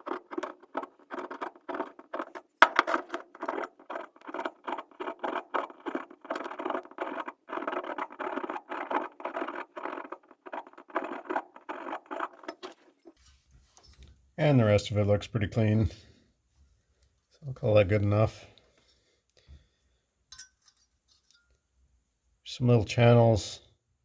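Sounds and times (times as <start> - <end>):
brush scrubbing rusty metal: 0.0 - 2.5, 3.2 - 13.2.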